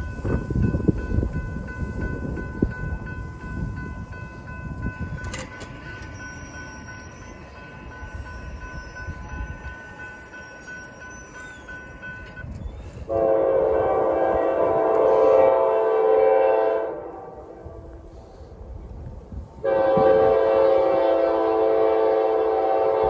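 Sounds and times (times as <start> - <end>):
wind rumble on microphone: 0.0 - 6.3, 12.1 - 15.7, 17.0 - 23.0
locomotive horn blast: 13.1 - 18.0, 19.6 - 23.0.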